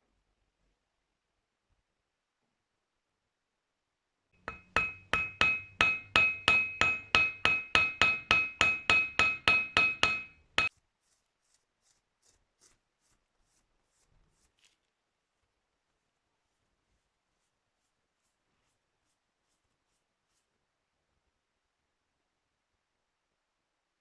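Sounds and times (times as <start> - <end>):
hammer blows on metal: 4.4 - 10.7.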